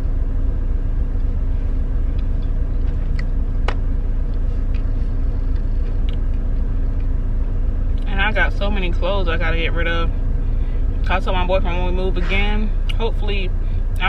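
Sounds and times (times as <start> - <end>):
truck engine rumbling: 0.0 - 14.0.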